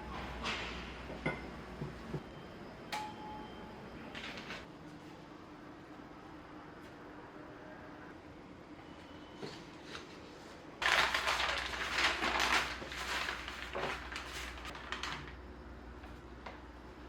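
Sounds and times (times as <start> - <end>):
crinkling and rustling: 10.8 - 15.4.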